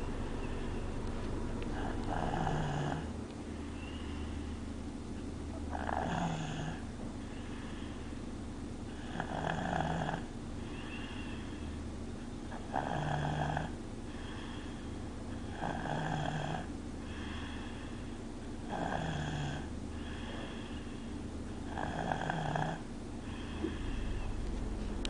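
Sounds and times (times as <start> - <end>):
quiet breaths: 0.0 - 25.0
child snoring: 1.7 - 3.1, 5.7 - 8.0, 8.9 - 11.7, 12.5 - 14.7, 15.4 - 18.0, 18.6 - 20.9, 21.6 - 24.4.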